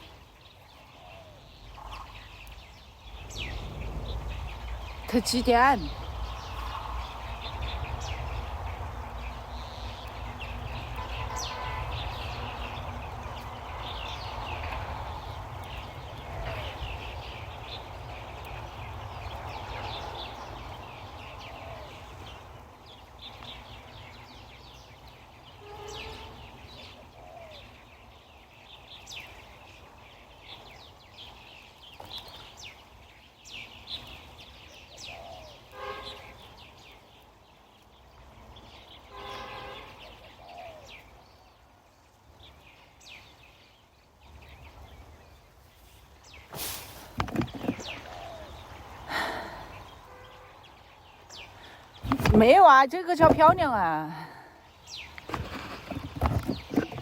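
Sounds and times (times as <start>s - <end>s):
small birds chirping: 0.0s - 57.0s
wind rumble on microphone: 1.4s - 26.8s.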